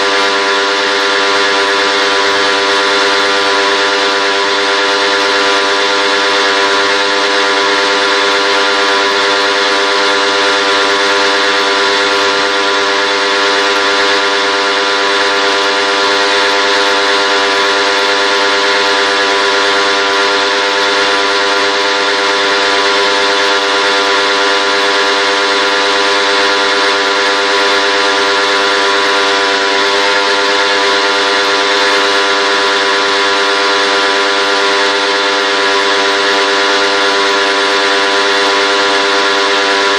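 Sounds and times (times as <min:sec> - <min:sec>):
machine motor humming: 0:00.0 - 0:39.9.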